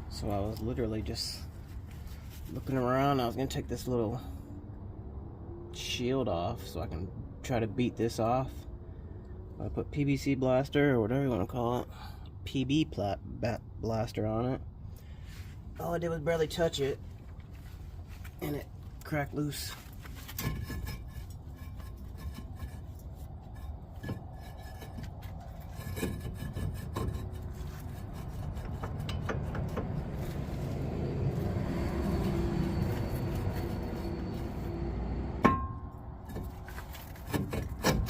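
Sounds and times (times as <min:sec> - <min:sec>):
hand tools rubbing and scraping: 0:19.6 - 0:35.6, 0:36.2 - 0:38.0
tool clicks and knocks: 0:28.6 - 0:30.0
sharp ringing knock: 0:35.4 - 0:36.0.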